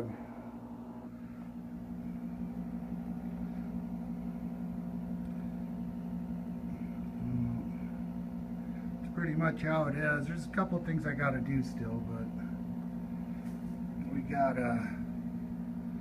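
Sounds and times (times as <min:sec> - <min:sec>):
air conditioner humming: 0:00.0 - 0:16.0.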